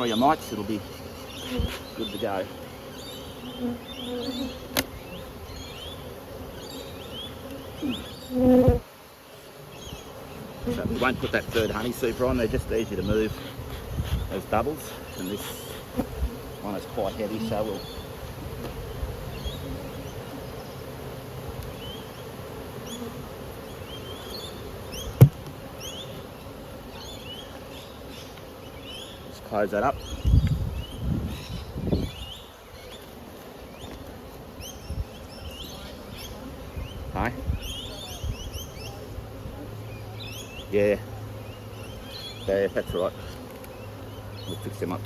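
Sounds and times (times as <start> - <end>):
honeybees buzzing: 0.0 - 45.0.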